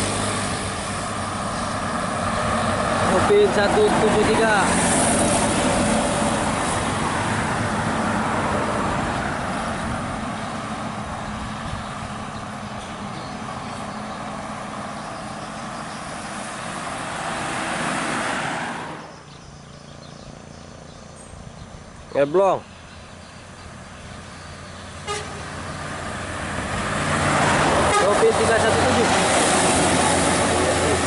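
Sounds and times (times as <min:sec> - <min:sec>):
bus passing: 0:00.0 - 0:31.0
road noise: 0:00.0 - 0:31.0.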